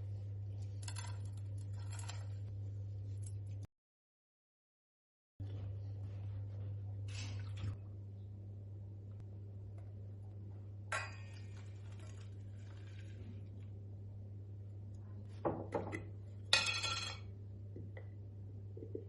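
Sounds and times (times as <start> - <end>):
steady low hum: 5.4 - 15.4.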